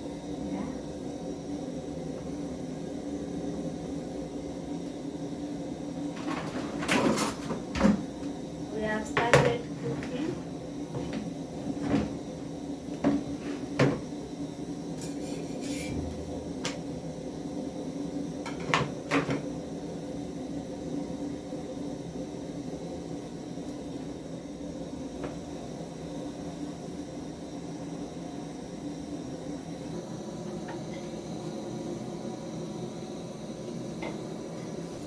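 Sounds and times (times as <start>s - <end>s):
steady low hum: 0.0s - 35.0s
pan and utensils clattering: 15.0s - 16.0s.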